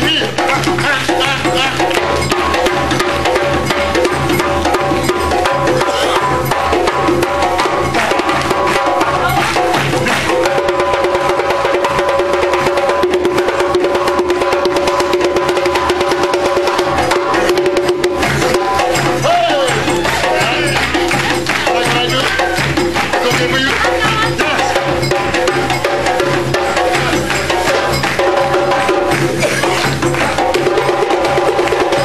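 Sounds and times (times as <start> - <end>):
fast percussion music: 0.0 - 32.0.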